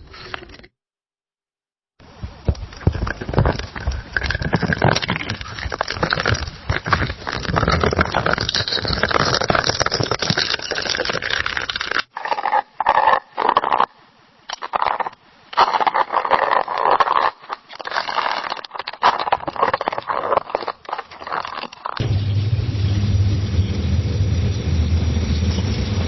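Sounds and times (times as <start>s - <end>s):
coffee maker sputtering: 22.0s - 26.0s.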